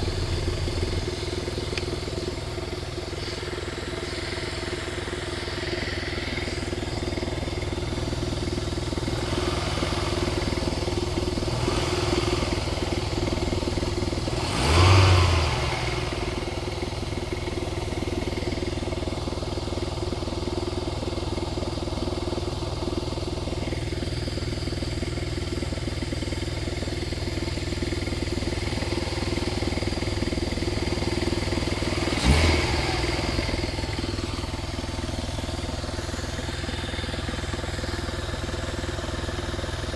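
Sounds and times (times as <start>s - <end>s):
car engine revving: 0.0s - 5.5s, 8.9s - 17.0s, 28.4s - 34.7s
knocking noise inside engine: 0.0s - 39.9s.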